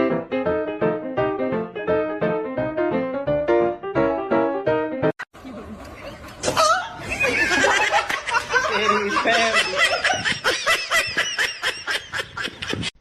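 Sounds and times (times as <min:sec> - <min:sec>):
laughter in quick bursts: 0:06.6 - 0:13.0.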